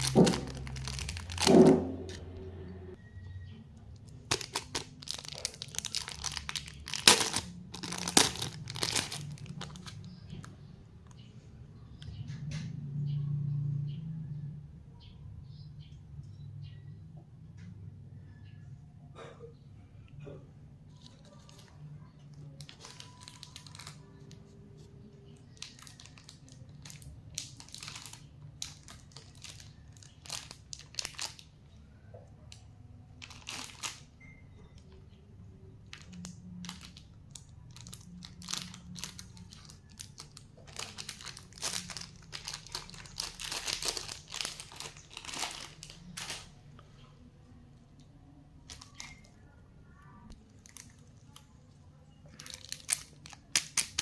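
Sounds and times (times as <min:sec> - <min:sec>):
plastic wrappers crinkling: 0:00.0 - 0:02.5, 0:03.9 - 0:11.3, 0:20.9 - 0:31.6, 0:33.2 - 0:34.9, 0:35.8 - 0:46.8, 0:48.6 - 0:49.4, 0:50.3 - 0:51.6, 0:52.2 - 0:54.0.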